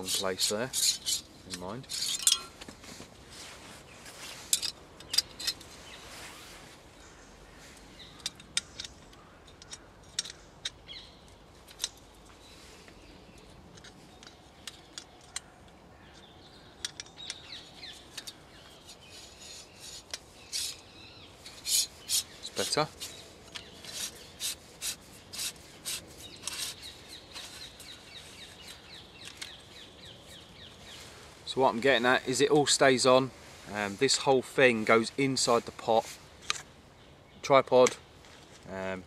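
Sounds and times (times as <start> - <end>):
stove parts clicking and scraping: 0.0 - 2.8, 8.2 - 10.8.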